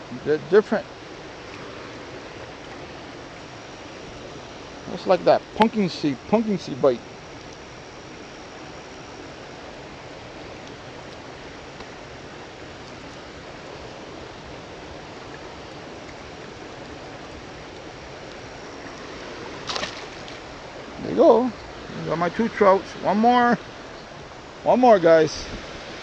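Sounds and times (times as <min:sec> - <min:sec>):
river water rushing: 0:00.0 - 0:26.0.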